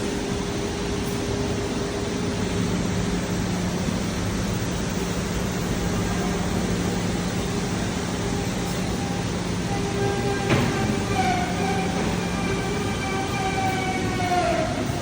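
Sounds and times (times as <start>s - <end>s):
router machine running: 9.6s - 15.0s.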